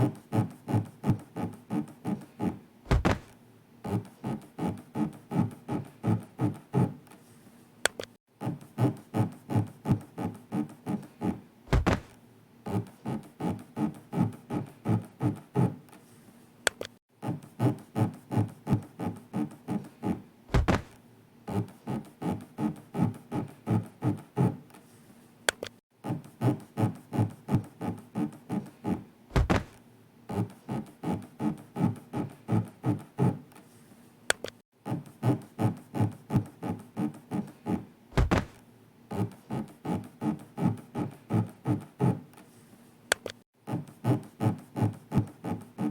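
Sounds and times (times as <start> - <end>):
low thunk: 2.9 - 3.3, 11.7 - 12.2, 20.5 - 21.0, 29.3 - 29.8, 38.2 - 38.6.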